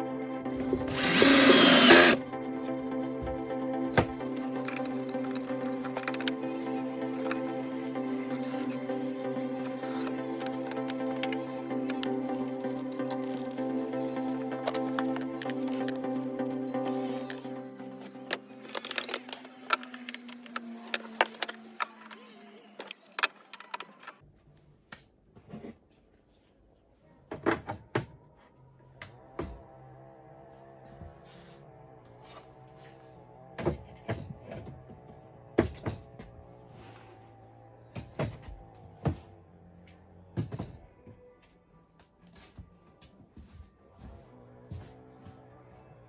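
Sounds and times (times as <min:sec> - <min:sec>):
background music: 0:00.0 - 0:22.1
drills knocking on wooden holder: 0:00.6 - 0:02.2.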